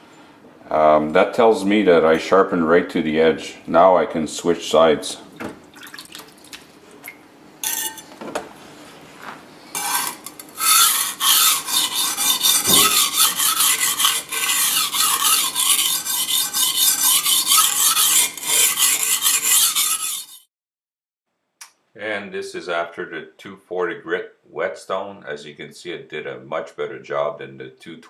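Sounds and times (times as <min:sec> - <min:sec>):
knife scraping on whetstone: 0:07.6 - 0:08.0, 0:09.7 - 0:20.5.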